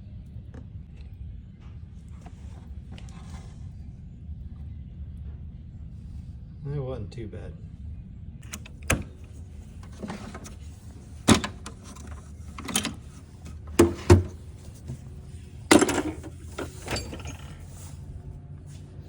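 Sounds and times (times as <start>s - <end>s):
steady low hum: 0.0s - 19.0s
hand tools clicking and clanking: 9.8s - 15.1s, 15.7s - 17.7s.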